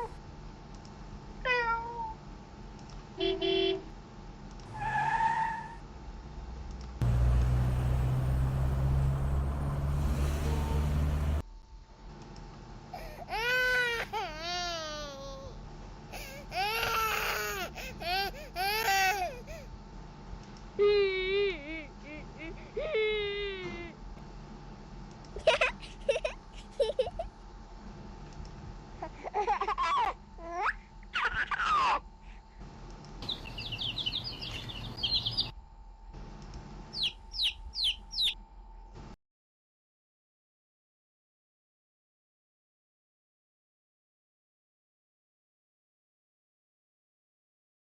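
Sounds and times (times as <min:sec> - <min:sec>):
vehicle sound effect: 0:07.0 - 0:11.4
infant crying: 0:13.0 - 0:19.7
rapid high chirps: 0:33.2 - 0:35.5, 0:36.9 - 0:38.4.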